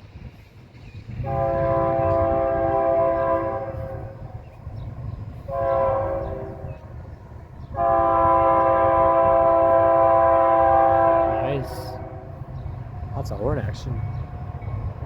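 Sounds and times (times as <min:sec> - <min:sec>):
passing train rumble: 0:00.0 - 0:15.0
locomotive air horn chord: 0:01.2 - 0:04.3, 0:05.5 - 0:06.8, 0:07.8 - 0:12.4.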